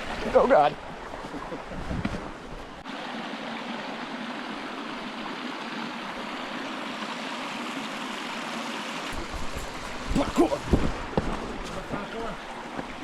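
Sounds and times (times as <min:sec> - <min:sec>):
creek water running over rocks: 0:00.0 - 0:13.0.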